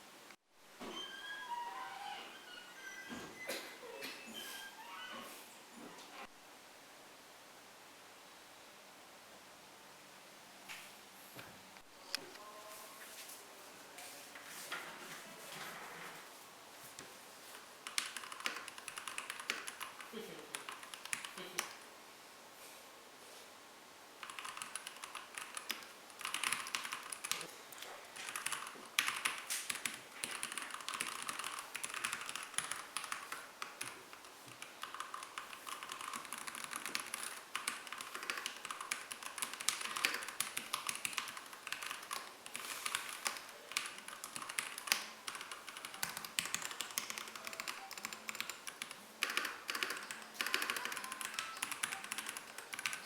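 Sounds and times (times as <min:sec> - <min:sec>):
mechanical keyboard typing: 0:17.8 - 0:21.8, 0:24.2 - 0:53.0.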